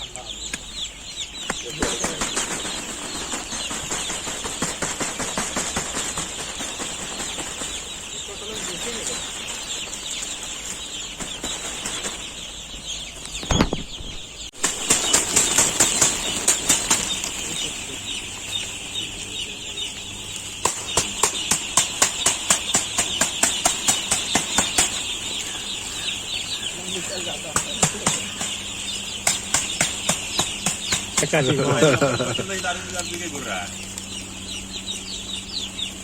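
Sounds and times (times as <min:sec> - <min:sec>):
chickens calling: 0:00.0 - 0:36.0
rapid evenly spaced beats: 0:01.0 - 0:12.5, 0:14.6 - 0:36.0.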